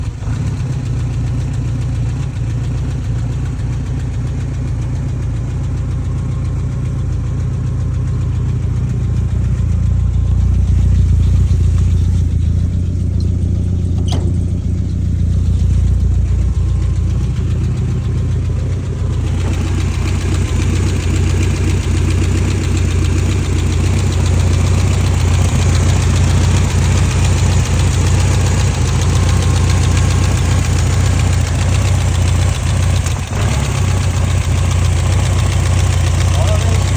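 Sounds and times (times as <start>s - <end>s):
car engine idling: 0.0s - 36.9s
sharp click: 11.7s - 15.7s.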